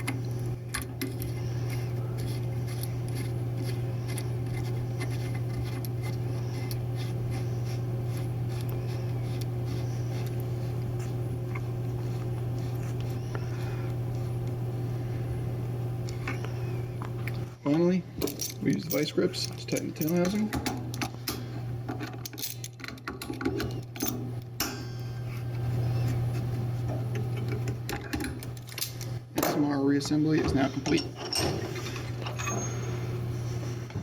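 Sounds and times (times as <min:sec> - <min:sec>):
steady low hum: 0:00.0 - 0:34.0
metal parts clicking and scraping: 0:18.2 - 0:24.2, 0:30.3 - 0:32.9.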